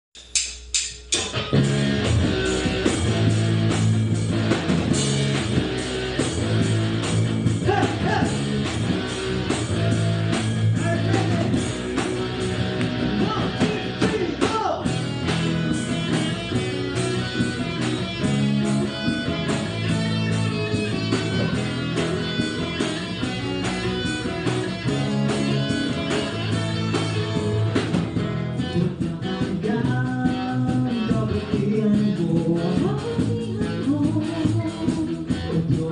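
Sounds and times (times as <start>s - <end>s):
band playing: 1.0s - 35.9s
bending lead guitar lines: 1.2s - 35.9s.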